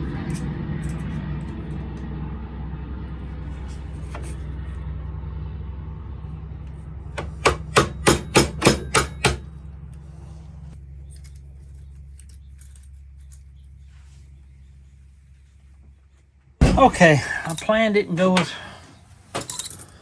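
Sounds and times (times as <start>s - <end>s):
low machine hum: 0.0s - 20.0s
hammer tapping pin punch: 7.2s - 9.4s.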